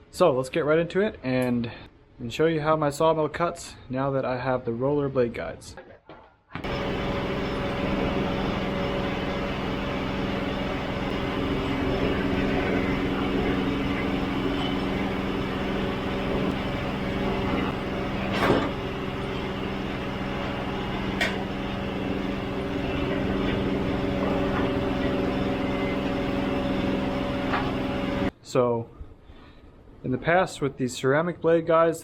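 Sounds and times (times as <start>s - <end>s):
band sawmill cutting log: 6.6s - 28.3s.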